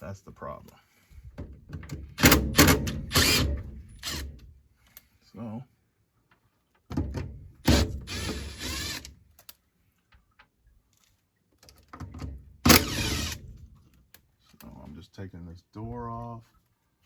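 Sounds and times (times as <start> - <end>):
metal scraping: 7.7 - 9.1, 12.7 - 13.6.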